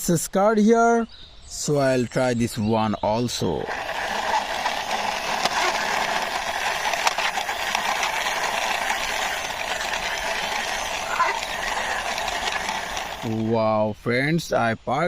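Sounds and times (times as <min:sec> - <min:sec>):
toy car wheels rattling: 0:03.3 - 0:13.6.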